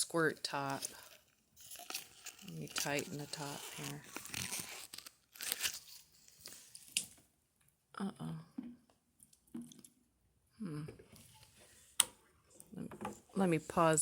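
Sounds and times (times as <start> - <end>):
plastic bottle crinkling: 0.0 - 7.2.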